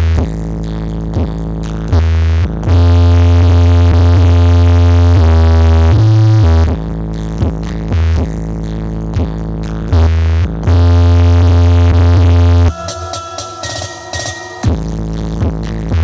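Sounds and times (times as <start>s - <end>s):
electronic dance music: 12.5s - 15.6s.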